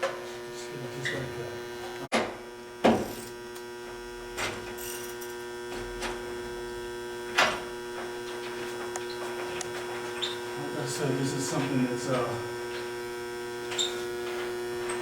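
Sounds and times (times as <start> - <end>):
electrical hum: 0.0 - 15.0
sharp knocks on boiler: 2.1 - 3.2.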